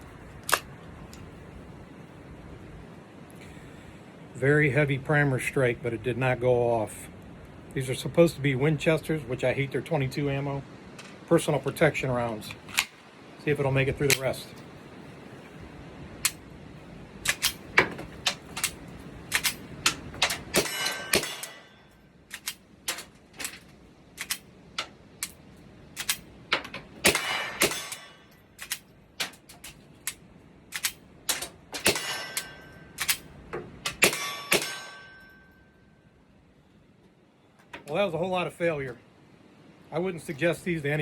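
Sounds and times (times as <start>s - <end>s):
pistol shots cracking: 17.2s - 23.1s, 27.0s - 29.4s, 30.7s - 35.2s
metallic ringing: 20.5s - 22.1s, 27.2s - 28.5s, 31.8s - 33.0s, 34.0s - 36.1s
metallic clacks: 26.0s - 35.8s.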